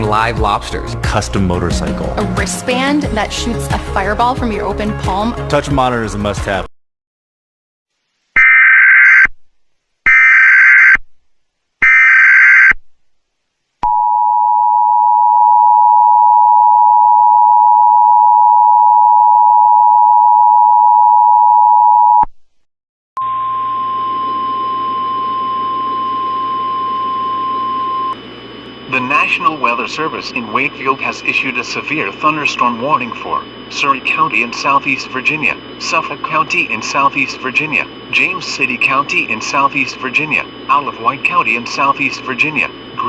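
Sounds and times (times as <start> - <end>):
single-note alarm tone: 23.2 - 28.2
radio hiss: 27.6 - 43.0.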